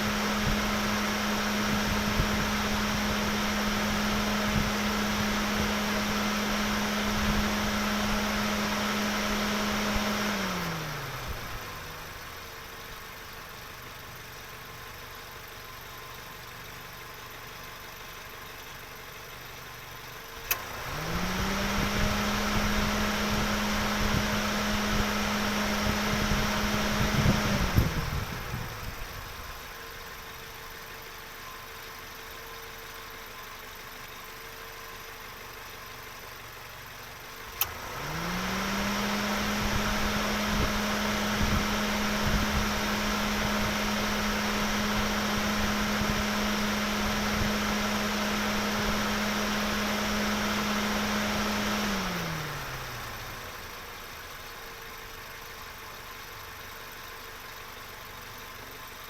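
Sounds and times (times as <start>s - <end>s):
car engine idling and revving: 0.0s - 59.0s
click: 20.4s - 20.6s, 37.5s - 37.8s.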